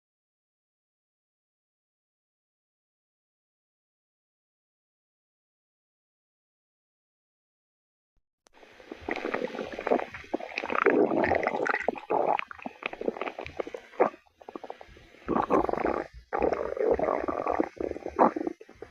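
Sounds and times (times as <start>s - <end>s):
stomach growling and gurgling: 8.6s - 18.9s.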